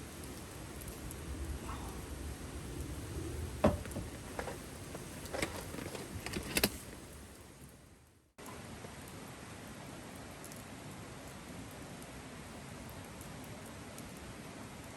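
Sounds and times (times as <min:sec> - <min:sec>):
low rumble and hiss: 0:00.0 - 0:14.9
sharp knocks and clicks: 0:03.6 - 0:06.8.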